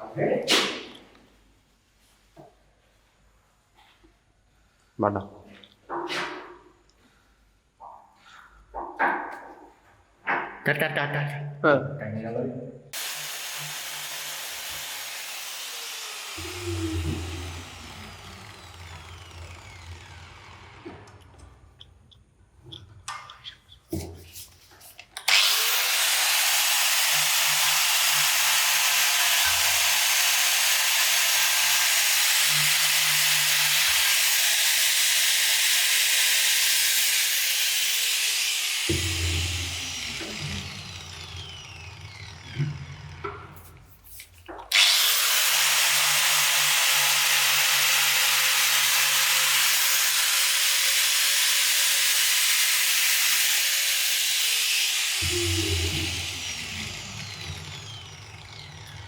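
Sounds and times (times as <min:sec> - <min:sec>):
power tool abrasive hissing: 0:13.0 - 0:20.9, 0:25.3 - 0:42.9, 0:44.7 - 0:59.0.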